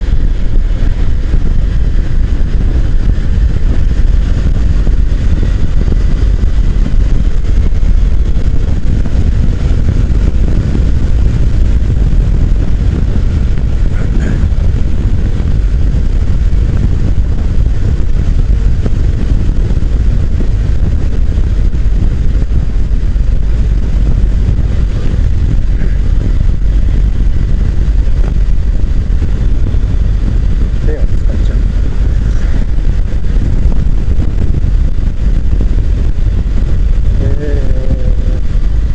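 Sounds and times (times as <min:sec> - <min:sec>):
motorcycle engine rumble: 0:00.0 - 0:38.9
wind rush: 0:00.0 - 0:38.9.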